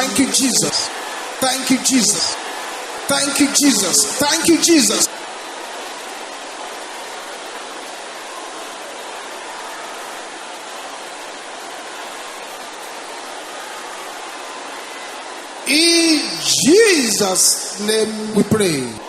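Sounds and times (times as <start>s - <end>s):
congregation praying aloud: 0.0s - 5.1s, 15.7s - 19.0s.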